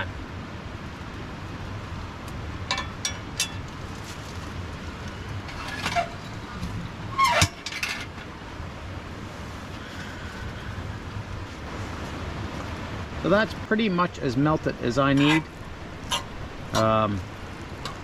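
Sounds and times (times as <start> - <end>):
steady low rumble: 8.2 - 18.0.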